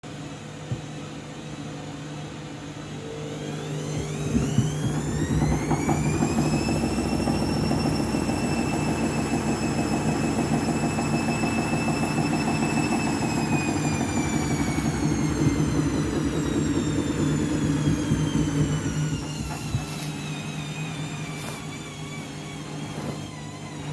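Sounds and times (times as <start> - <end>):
washing machine motor whine: 0.1 - 23.9
washing machine drum rattling and knocking: 4.1 - 19.9.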